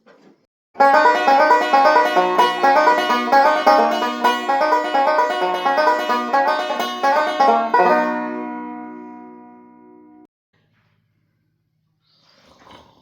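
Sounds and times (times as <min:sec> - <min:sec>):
fast plucked-string picking: 0:00.8 - 0:10.2.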